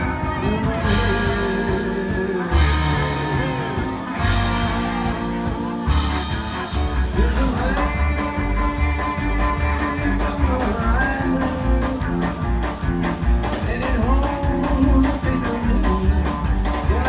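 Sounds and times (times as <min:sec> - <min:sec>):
electric guitar: 0:00.0 - 0:17.0
pulsing bass line: 0:00.0 - 0:17.0
steady drum beat: 0:00.0 - 0:17.0.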